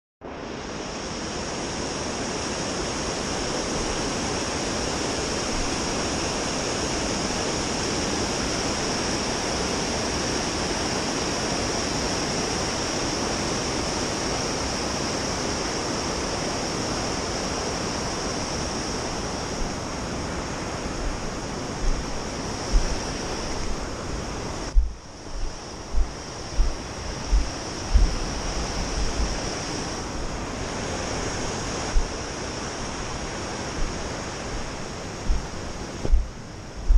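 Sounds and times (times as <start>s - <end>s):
steady rushing hiss: 0.2s - 36.9s
low thumps on microphone: 21.0s - 23.8s, 24.7s - 29.4s, 31.9s - 32.2s, 35.2s - 36.9s.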